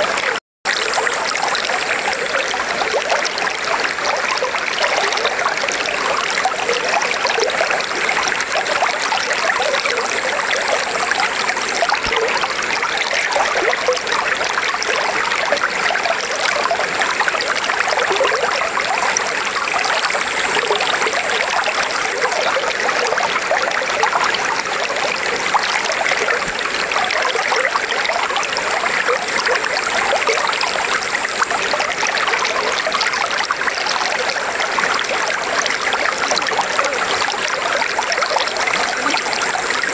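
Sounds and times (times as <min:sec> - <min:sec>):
river water flowing over stones: 0:00.0 - 0:39.9.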